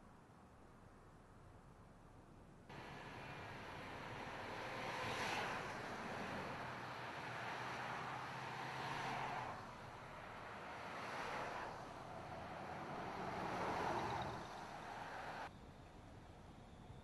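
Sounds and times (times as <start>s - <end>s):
tyre hiss of passing vehicles: 2.7s - 15.8s
low engine hum: 2.7s - 17.0s.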